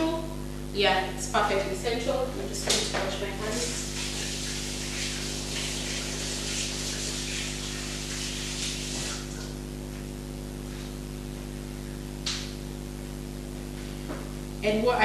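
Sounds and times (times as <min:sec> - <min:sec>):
tap water running over hands: 0:02.6 - 0:09.6.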